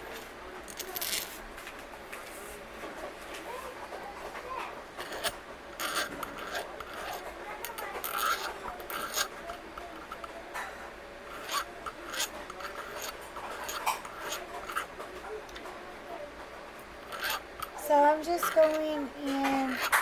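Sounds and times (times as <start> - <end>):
file scraping metal: 4.9 - 15.2, 16.8 - 20.0.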